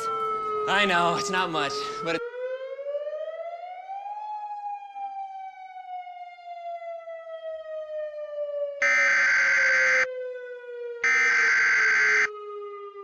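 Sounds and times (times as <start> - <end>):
warning siren wailing: 0.0 - 13.0
harsh digital data tones: 8.8 - 10.0, 11.0 - 12.3.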